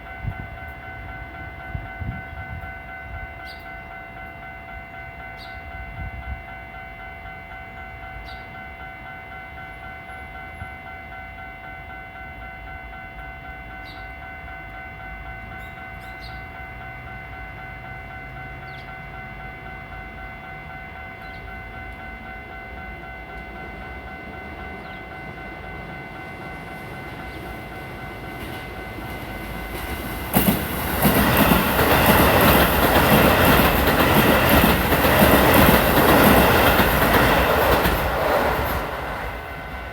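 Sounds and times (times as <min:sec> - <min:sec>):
electric train passing: 0:00.0 - 0:39.9
level-crossing warning bell: 0:00.0 - 0:39.9
wheels clattering over rail joints: 0:26.5 - 0:39.9.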